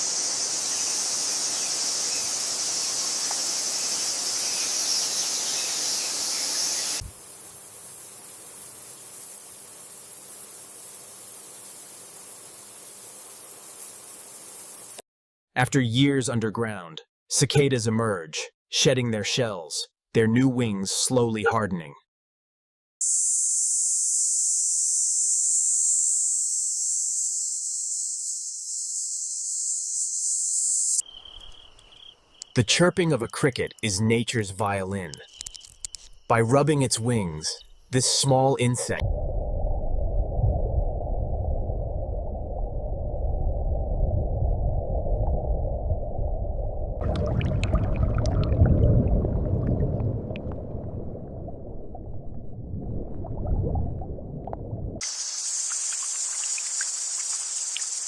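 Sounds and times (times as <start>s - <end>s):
cicadas buzzing: 0.0s - 15.0s, 23.0s - 33.8s, 35.0s - 38.0s, 55.0s - 58.0s
insects chorus: 0.0s - 15.0s, 23.0s - 39.0s, 55.0s - 58.0s
steady hiss: 55.0s - 58.0s.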